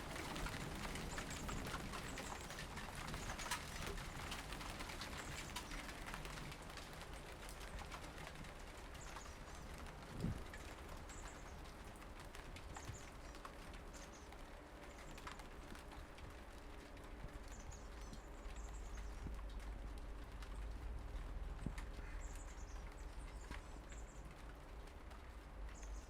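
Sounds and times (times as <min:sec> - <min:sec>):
wind rumble on microphone: 0:00.0 - 0:13.6.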